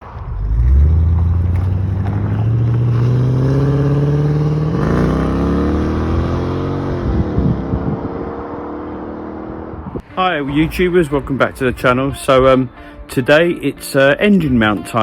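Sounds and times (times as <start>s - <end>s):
car engine revving: 0.0s - 10.0s.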